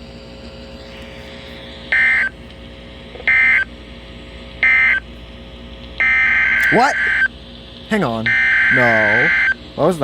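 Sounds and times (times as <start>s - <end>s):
warbling digital data tone: 6.0s - 7.3s, 8.2s - 9.6s.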